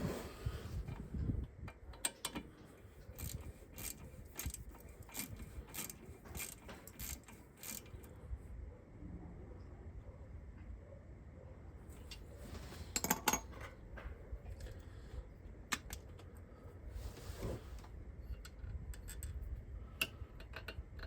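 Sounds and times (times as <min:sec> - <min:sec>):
hand ratchet clicking: 0:03.2 - 0:08.0.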